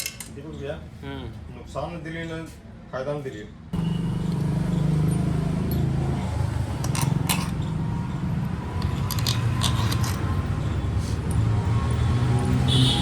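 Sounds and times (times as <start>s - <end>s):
metal tools clinking and scraping: 0.0s - 0.4s, 6.8s - 11.5s.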